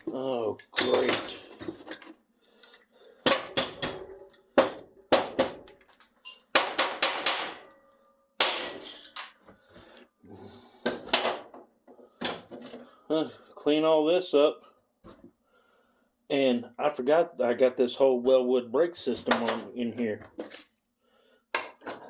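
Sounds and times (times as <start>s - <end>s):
metal parts clanking: 0.0s - 2.1s.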